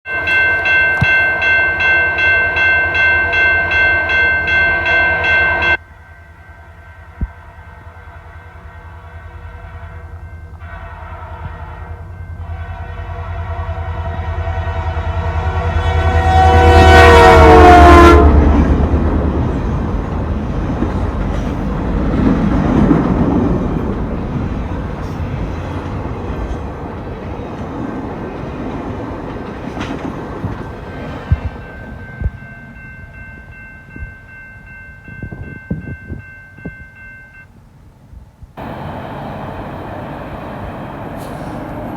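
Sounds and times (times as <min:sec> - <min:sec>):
train rumble and clickety-clack: 0:06.7 - 0:37.0, 0:38.2 - 0:41.9
locomotive air horn blast: 0:07.1 - 0:18.6, 0:40.7 - 0:41.9
diesel engine rumble: 0:38.6 - 0:41.9.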